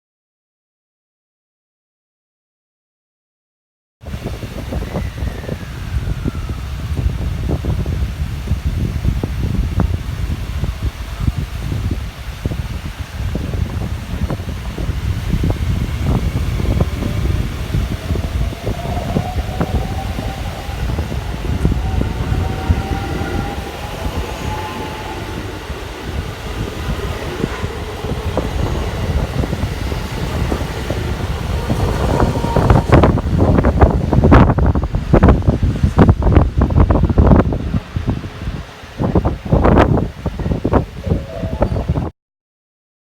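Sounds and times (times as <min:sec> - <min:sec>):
electric train rumble: 0:04.1 - 0:42.1
rising train whine: 0:04.1 - 0:42.1.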